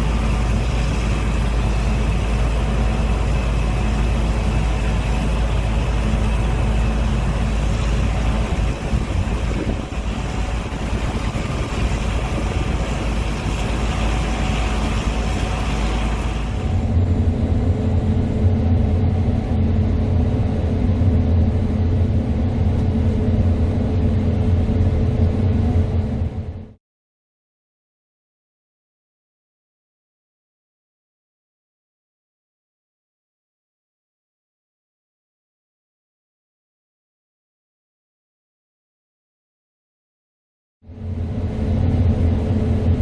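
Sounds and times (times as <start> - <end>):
combine harvester droning: 0.0 - 26.8.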